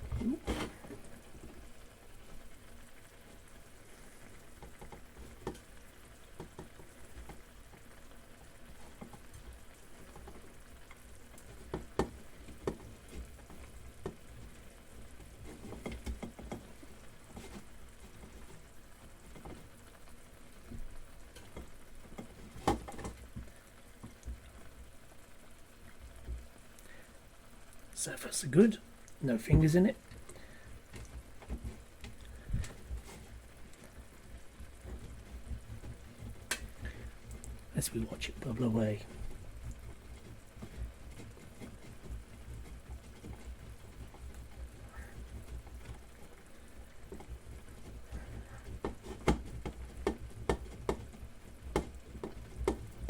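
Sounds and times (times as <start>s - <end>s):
pan bubbling faintly: 0.0s - 53.0s
cheese grating on grater: 34.6s - 53.0s.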